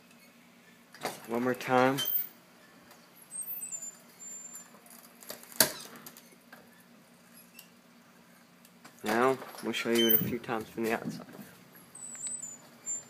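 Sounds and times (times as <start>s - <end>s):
door closer squeaking: 1.9s - 2.3s, 3.3s - 4.7s, 9.9s - 10.4s, 12.0s - 13.0s.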